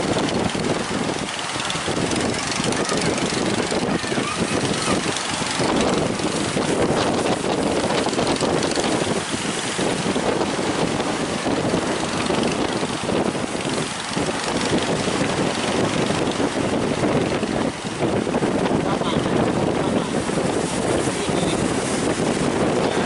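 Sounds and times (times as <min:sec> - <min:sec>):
boat engine running: 0:00.0 - 0:23.0
rushing water: 0:00.0 - 0:23.0
wind buffeting microphone: 0:00.0 - 0:23.0.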